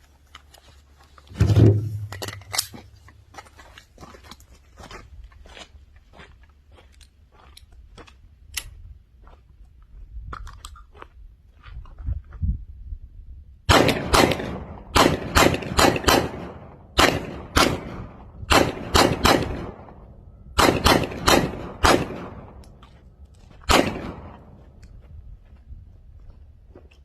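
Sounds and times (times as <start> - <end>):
gunshots: 13.7 - 20.0, 20.6 - 22.6, 23.6 - 24.6.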